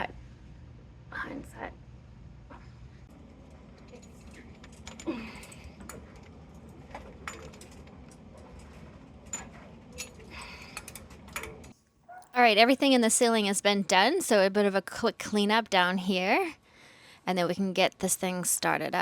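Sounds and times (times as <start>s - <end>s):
low steady hum: 0.0s - 19.0s
tools clicking and clinking: 3.8s - 11.7s.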